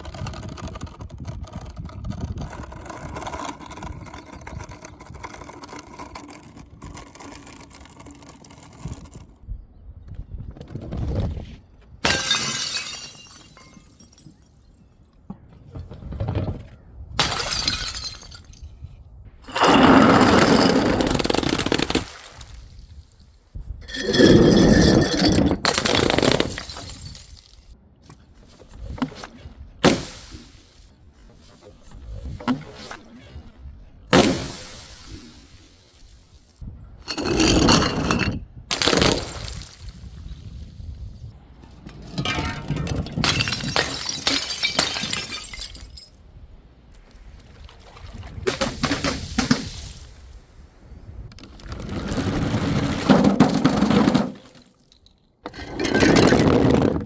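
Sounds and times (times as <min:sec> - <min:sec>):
glass shattering: 0:12.0 - 0:14.7, 0:17.2 - 0:18.8, 0:23.8 - 0:27.8, 0:37.1 - 0:40.2, 0:42.2 - 0:46.2
sharp breaking knocks: 0:34.1 - 0:34.7.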